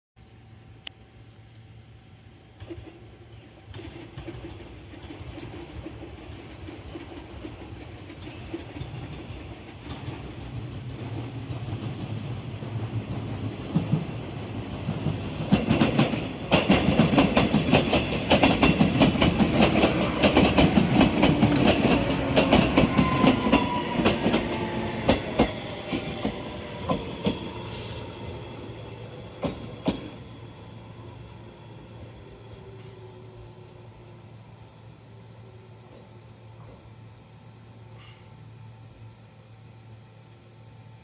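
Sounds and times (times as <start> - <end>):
train wheels clacking over rail joints: 2.5 - 12.3, 13.1 - 28.2, 29.3 - 30.3.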